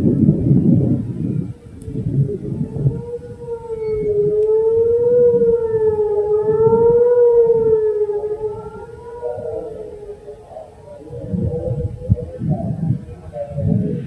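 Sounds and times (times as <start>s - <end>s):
warning siren steady tone: 0.0s - 14.0s.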